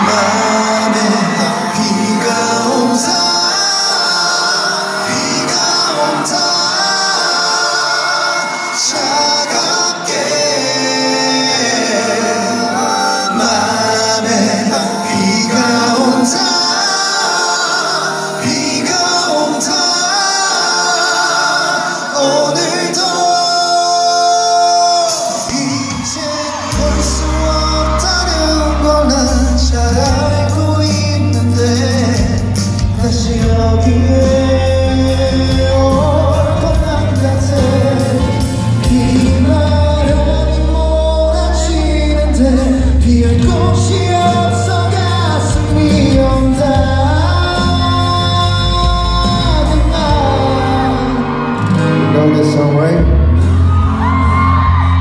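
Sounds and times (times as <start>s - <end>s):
live pop band: 0.0s - 55.0s
person singing: 0.0s - 55.0s
bass line: 26.7s - 51.5s.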